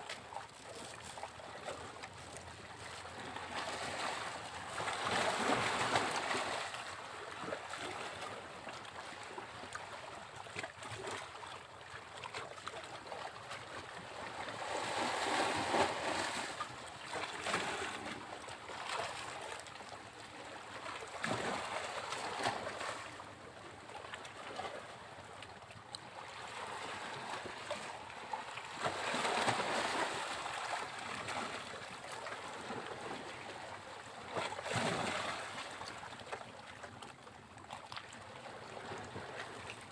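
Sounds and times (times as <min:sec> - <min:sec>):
sea waves breaking on beach: 0:03.0 - 0:08.5, 0:13.9 - 0:19.6, 0:26.2 - 0:33.6, 0:34.2 - 0:36.0.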